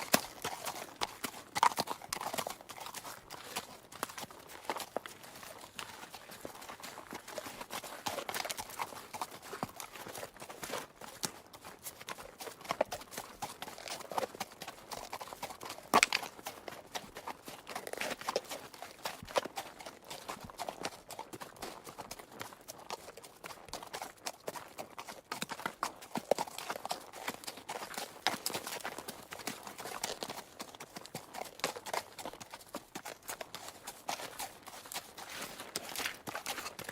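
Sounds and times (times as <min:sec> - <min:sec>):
horse hooves clip-clopping: 0:00.0 - 0:36.9.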